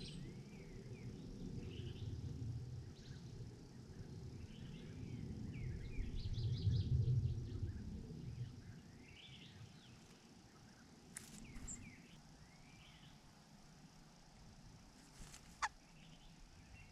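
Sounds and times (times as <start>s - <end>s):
low rumble of wind: 0.0s - 16.9s
birds chirping: 10.5s - 13.2s.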